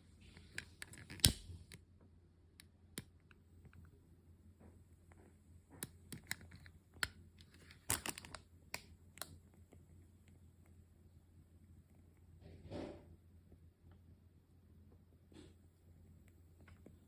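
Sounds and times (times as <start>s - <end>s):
candle crackling and popping: 0.3s - 1.8s, 5.1s - 12.5s.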